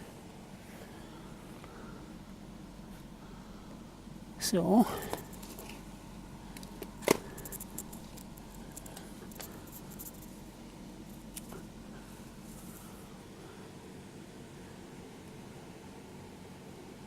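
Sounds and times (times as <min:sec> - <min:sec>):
low steady hiss: 0:00.0 - 0:17.0.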